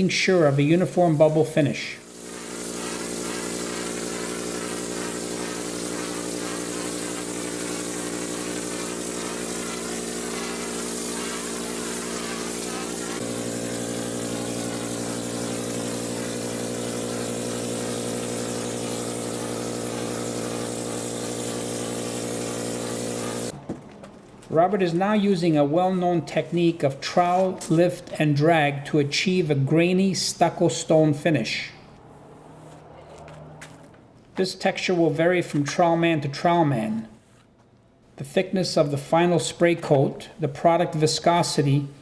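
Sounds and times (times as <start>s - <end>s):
spray gun hissing: 0.0s - 23.6s
air compressor droning: 2.0s - 23.6s.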